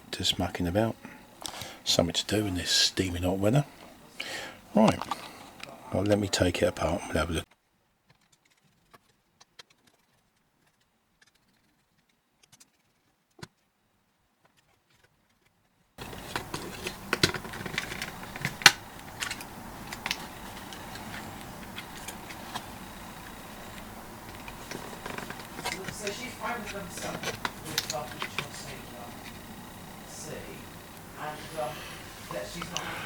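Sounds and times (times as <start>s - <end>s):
steady background hiss: 0.0s - 7.5s, 16.0s - 33.0s.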